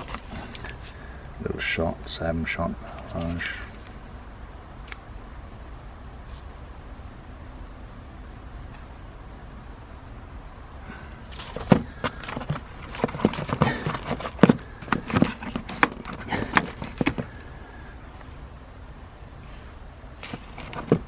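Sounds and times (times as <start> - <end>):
cardboard box knocks and rustles: 20.2 - 21.0.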